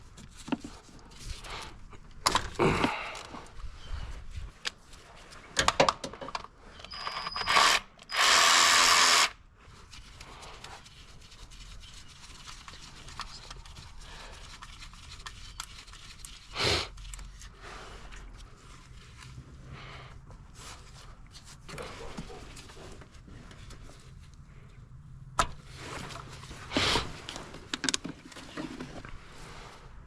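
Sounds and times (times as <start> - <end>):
tools clicking and knocking: 5.6 - 8.1, 27.7 - 28.3
power tool burst: 7.5 - 9.3.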